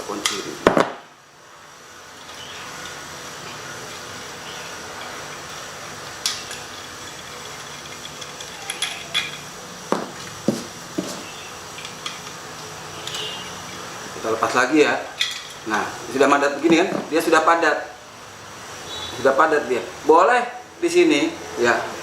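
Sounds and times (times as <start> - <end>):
steady background noise: 0.0 - 22.0
tools clinking on metal: 7.4 - 9.5.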